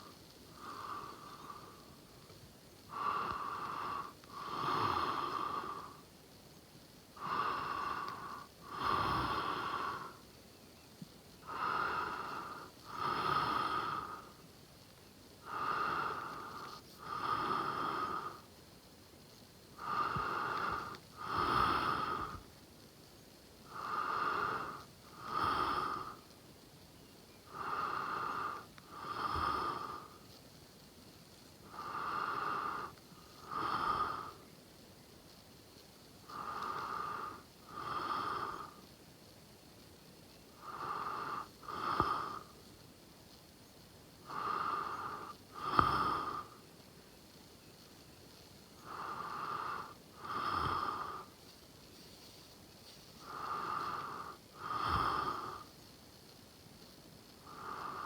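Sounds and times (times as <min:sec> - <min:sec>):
person snoring: 0:40.6 - 0:42.4, 0:44.3 - 0:46.5, 0:48.8 - 0:51.3, 0:53.3 - 0:55.6.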